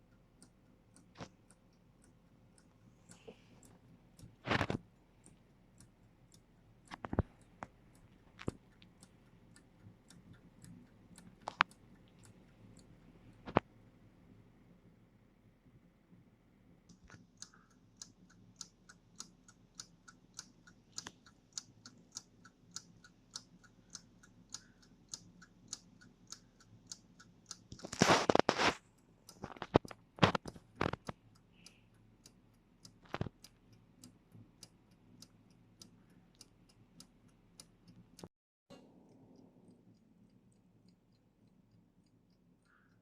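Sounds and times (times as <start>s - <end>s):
alarm clock ticking: 0.0s - 4.4s.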